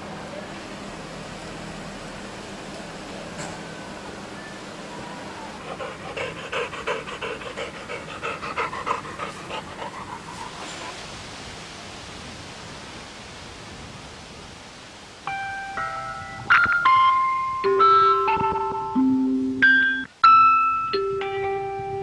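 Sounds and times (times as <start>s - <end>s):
steady background hiss: 0.0s - 22.0s
dog panting: 4.9s - 11.2s.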